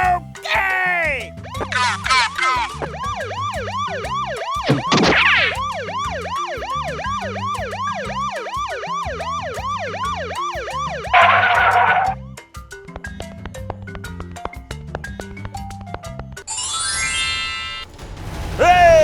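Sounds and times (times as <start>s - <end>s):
background music with beat: 0.0s - 16.4s
siren yelping: 1.4s - 12.4s
noisy whoosh: 17.4s - 19.0s.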